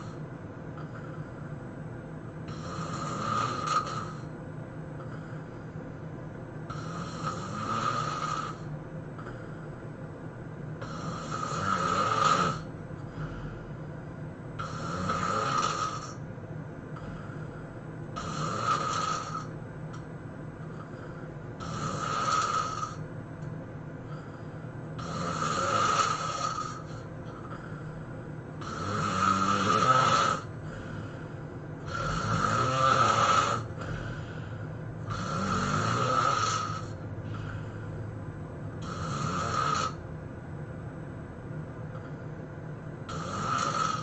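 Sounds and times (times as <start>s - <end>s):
person snoring loudly: 2.5s - 4.3s, 6.7s - 9.4s, 10.8s - 13.4s, 14.6s - 16.2s, 18.2s - 19.5s, 20.8s - 23.0s, 25.0s - 27.8s, 28.6s - 31.2s, 31.8s - 37.8s, 38.8s - 40.0s, 43.1s - 44.0s.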